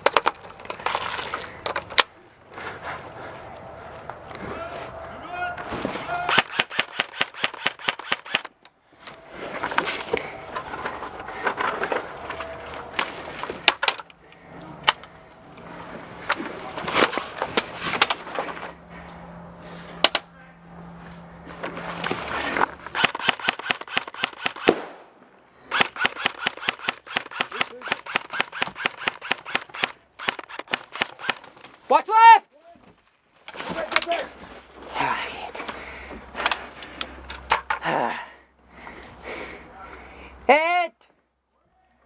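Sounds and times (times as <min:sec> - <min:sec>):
airsoft rifles firing bursts: 0:06.2 - 0:08.6, 0:22.9 - 0:25.0, 0:25.7 - 0:31.6
single airsoft shots: 0:23.0 - 0:25.1.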